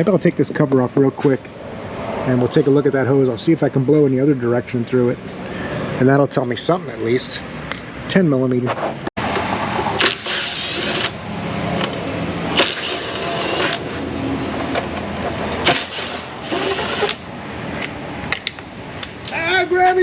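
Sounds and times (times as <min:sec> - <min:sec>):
steady mechanical noise: 0:08.9 - 0:20.0.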